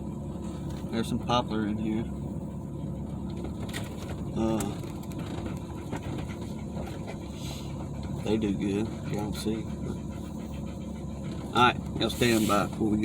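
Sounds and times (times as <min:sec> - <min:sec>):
pickup truck rumble from inside: 0:00.0 - 0:13.0.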